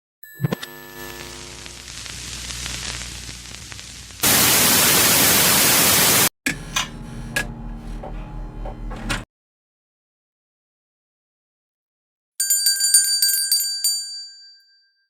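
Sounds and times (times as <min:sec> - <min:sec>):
low buzz: 0:00.5 - 0:09.2
burst of static white noise: 0:00.7 - 0:06.3
faint hiss: 0:01.5 - 0:06.3.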